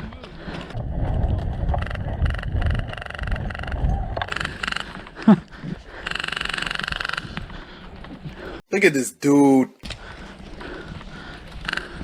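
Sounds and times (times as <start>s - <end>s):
low rumble: 0.5s - 4.3s.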